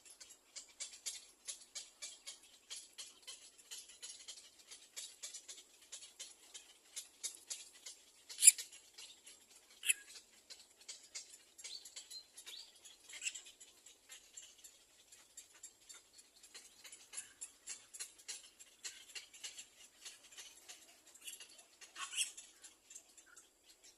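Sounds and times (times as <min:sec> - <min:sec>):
nestling birds squeaking: 0:00.0 - 0:23.9
sharp bird calls: 0:08.1 - 0:13.7, 0:18.8 - 0:23.9.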